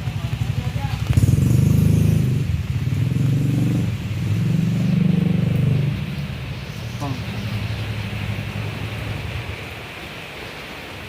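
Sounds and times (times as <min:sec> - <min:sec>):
motorcycle engine revving: 0:00.0 - 0:09.7
steady rain hiss: 0:00.0 - 0:11.0.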